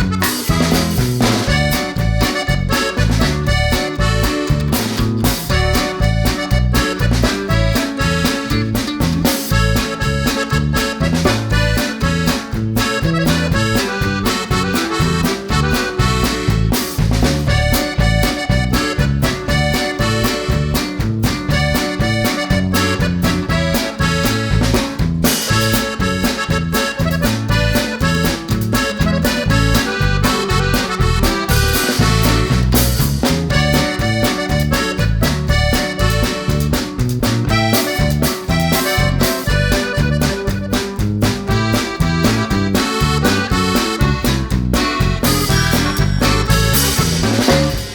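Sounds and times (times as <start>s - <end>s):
bass and drum beat: 0.0s - 47.9s
upbeat accordion music: 0.0s - 47.9s.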